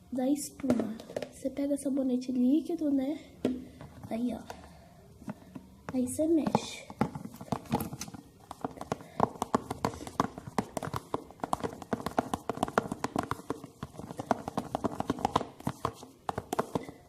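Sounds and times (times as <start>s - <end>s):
spoon stirring thick glue: 3.4s - 17.0s.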